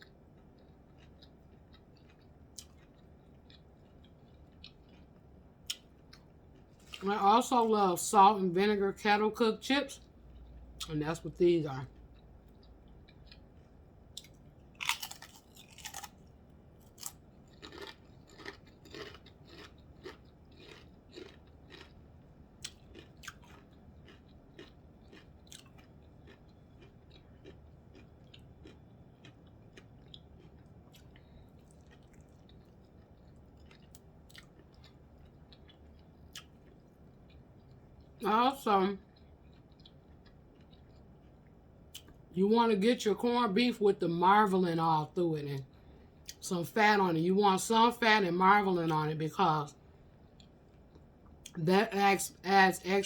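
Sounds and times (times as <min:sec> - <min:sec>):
person crunching potato chips: 0:14.2 - 0:22.0, 0:22.6 - 0:36.8.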